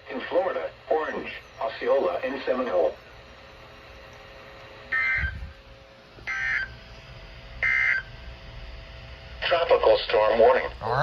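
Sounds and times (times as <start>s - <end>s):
buzzy data tone bursts: 10.8s - 11.0s.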